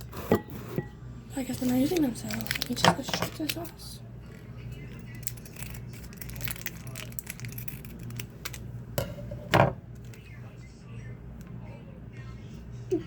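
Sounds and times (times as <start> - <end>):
steady low hum: 0.0 - 13.0
plastic packet crinkling: 1.4 - 3.9, 5.0 - 8.7.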